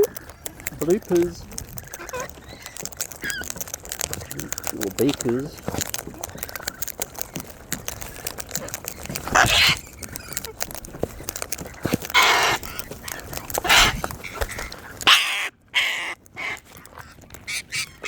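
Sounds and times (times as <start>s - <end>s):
cockatoo screeching: 0.0s - 4.8s, 8.6s - 10.7s, 11.7s - 18.0s
small clicks and taps: 0.0s - 15.2s, 15.8s - 18.0s.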